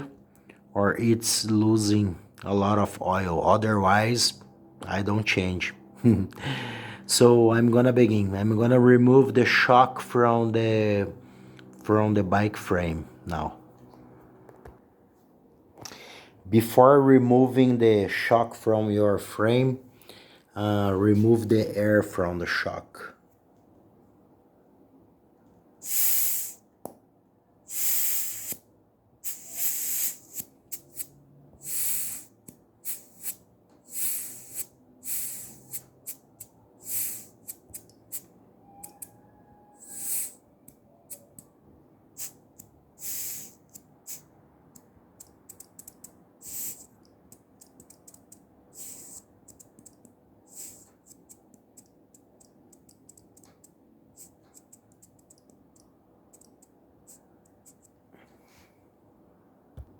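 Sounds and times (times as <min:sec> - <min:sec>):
air hissing from valve: 0:25.8 - 0:26.6, 0:27.7 - 0:28.6, 0:29.2 - 0:39.1, 0:39.8 - 0:41.5, 0:42.2 - 0:55.4, 0:56.3 - 0:57.9
small clicks: 0:43.7 - 0:58.0.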